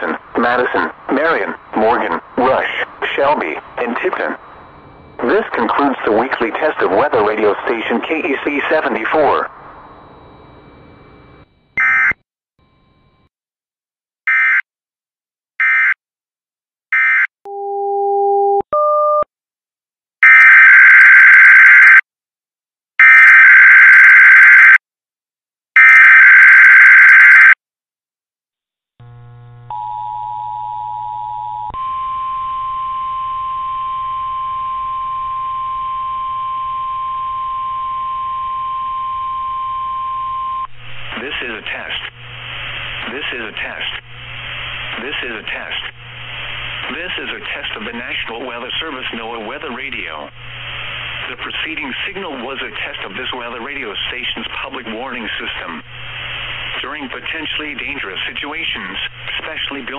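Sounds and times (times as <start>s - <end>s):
low hum: 0.0s - 6.0s, 9.4s - 11.8s
steady warning alarm tone: 0.4s - 13.2s.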